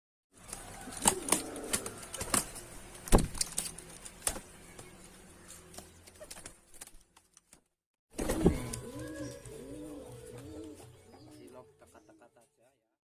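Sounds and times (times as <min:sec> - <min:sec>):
faint pigeon coo: 0:00.6 - 0:02.4, 0:08.2 - 0:12.4.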